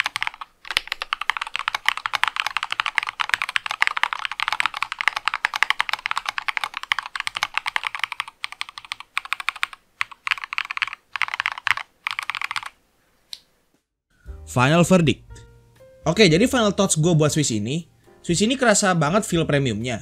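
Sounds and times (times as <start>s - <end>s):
typing on mechanical keyboard: 0.0s - 12.8s.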